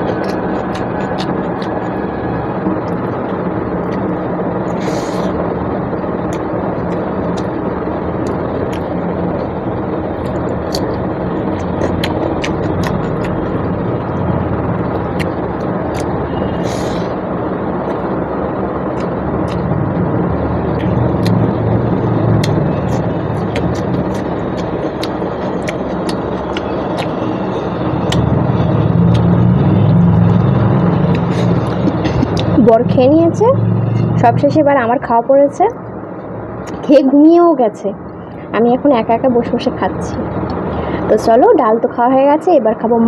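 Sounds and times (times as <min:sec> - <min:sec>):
eating clicks and smacks: 0:00.0 - 0:05.3, 0:06.3 - 0:07.6, 0:08.2 - 0:17.1, 0:18.9 - 0:19.7, 0:20.7 - 0:21.5, 0:22.2 - 0:32.6, 0:36.6 - 0:36.9
loud background rumble: 0:00.0 - 0:43.0.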